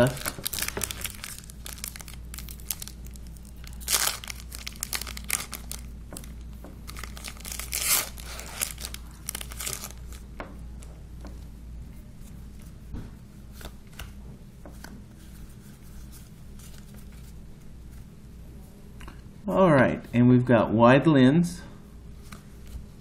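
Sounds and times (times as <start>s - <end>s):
foil wrapper crinkling and tearing: 0.0s - 10.2s.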